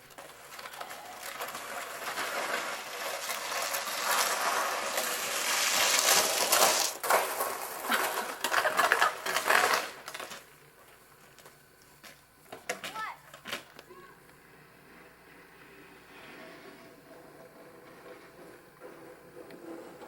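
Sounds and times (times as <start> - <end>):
crunching in snow: 0.4 - 7.0.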